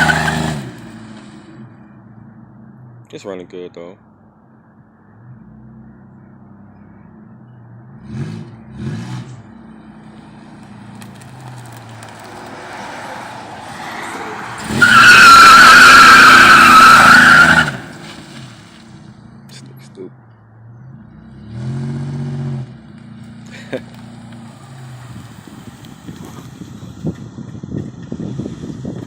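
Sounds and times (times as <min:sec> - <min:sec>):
car engine idling and revving: 0:00.0 - 0:29.0
tyres squealing: 0:11.8 - 0:18.2.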